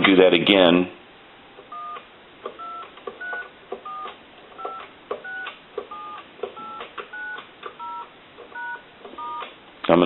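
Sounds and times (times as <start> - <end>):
telephone keypad tone beeps: 1.7 - 2.0, 2.6 - 9.5.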